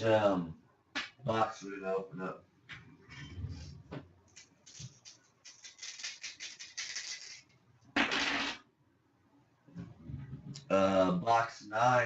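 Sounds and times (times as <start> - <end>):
dice rattling in hand: 4.4 - 7.5
dice tumbling on hard surface: 4.7 - 8.6.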